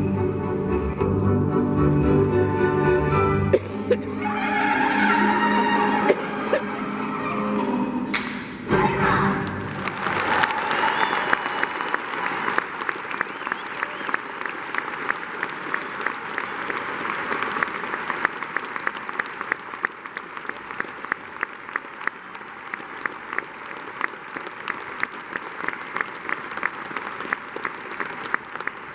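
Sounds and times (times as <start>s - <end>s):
audience applauding: 9.4s - 28.9s.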